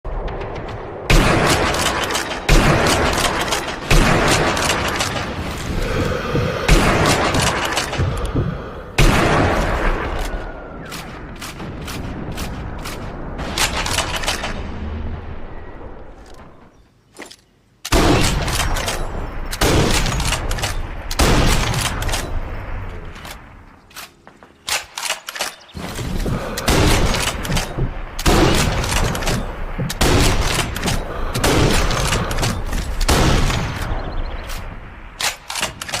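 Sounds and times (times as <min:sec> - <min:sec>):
rifle shots echoing: 0:00.1 - 0:05.4, 0:09.0 - 0:14.7, 0:26.5 - 0:34.3.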